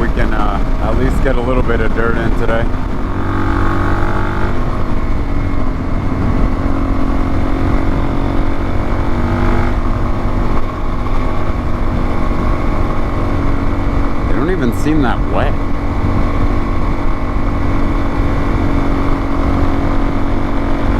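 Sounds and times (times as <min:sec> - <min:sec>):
motorcycle engine cruising: 0:00.0 - 0:20.9
road noise: 0:00.0 - 0:20.9.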